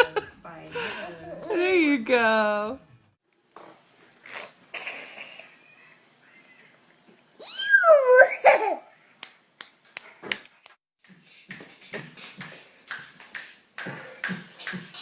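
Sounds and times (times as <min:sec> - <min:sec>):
baby laughing: 0:07.4 - 0:09.0
baby squealing: 0:07.4 - 0:09.0.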